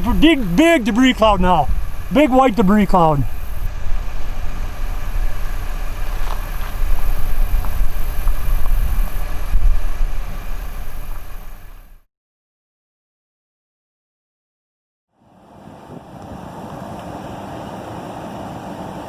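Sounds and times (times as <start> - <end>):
wind buffeting microphone: 0.0 - 11.8, 15.5 - 19.0
vehicle rumble: 0.0 - 12.0.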